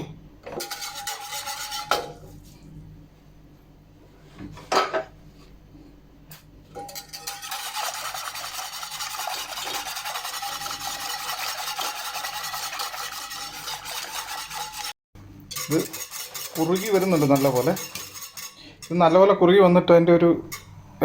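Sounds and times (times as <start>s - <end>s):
spoon stirring and scraping pan: 0.0s - 2.7s, 6.7s - 19.3s
utensil clanking against pan: 6.7s - 14.9s, 15.5s - 19.0s.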